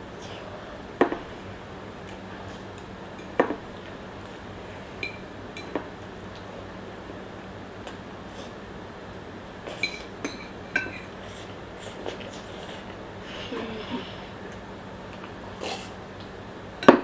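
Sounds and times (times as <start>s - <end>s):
steady low hum: 0.0s - 17.0s
utensils clinking against a dish: 5.0s - 5.9s, 9.7s - 12.9s, 16.8s - 17.0s.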